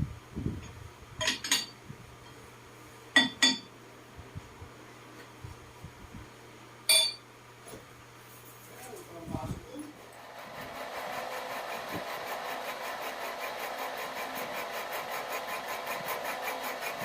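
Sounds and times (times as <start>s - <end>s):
steel tools clinking: 6.9s - 7.2s.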